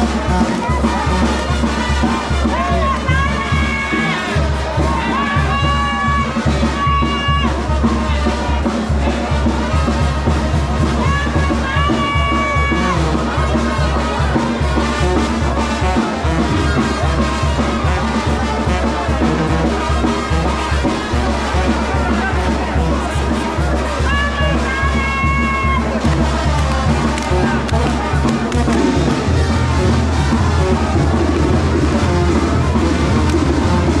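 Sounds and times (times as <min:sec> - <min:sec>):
trumpets playing long notes: 0:00.0 - 0:07.8, 0:11.0 - 0:34.0
steady bass beat: 0:12.6 - 0:20.5, 0:25.1 - 0:34.0.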